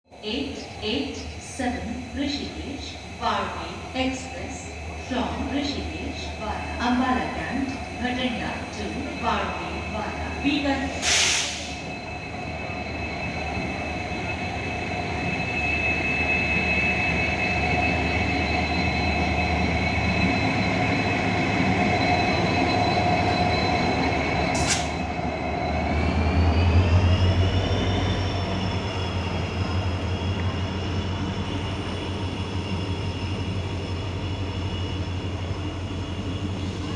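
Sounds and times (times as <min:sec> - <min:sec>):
train rumble: 0:00.1 - 0:36.9
train whine rising in pitch: 0:00.4 - 0:36.9.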